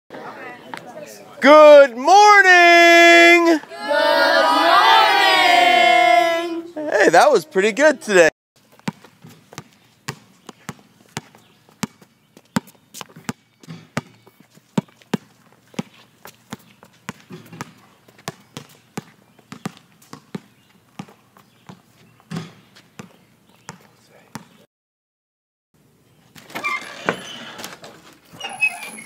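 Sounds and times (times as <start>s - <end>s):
balls bouncing on hard court: 8.7s - 14.2s, 14.8s - 24.6s.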